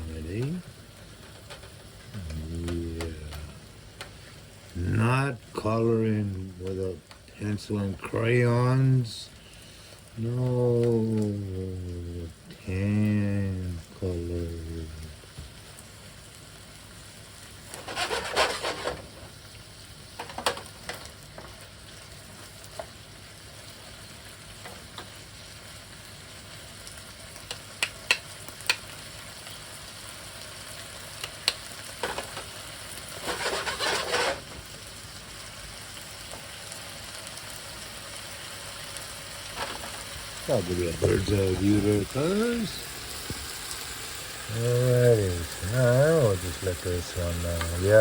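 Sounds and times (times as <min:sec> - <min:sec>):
food sizzling in frying pan: 0:00.0 - 0:48.0
utensil scraping pan: 0:17.7 - 0:19.3, 0:33.1 - 0:34.6
utensil clicking against pan: 0:27.4 - 0:28.9, 0:31.2 - 0:32.5.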